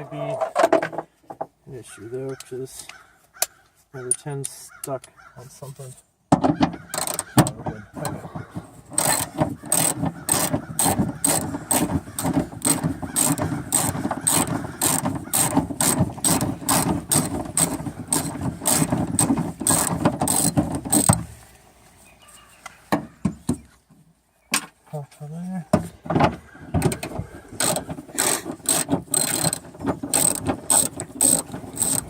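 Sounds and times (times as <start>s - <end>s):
socket ratchet clicking: 6.9s - 7.4s, 9.0s - 21.2s, 27.6s - 32.0s.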